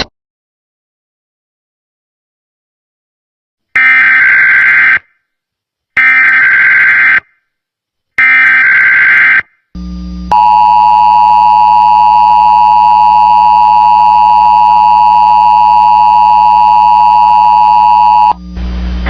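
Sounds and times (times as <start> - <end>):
low hum: 9.8 - 19.0
dual-tone alert signal: 10.3 - 18.6.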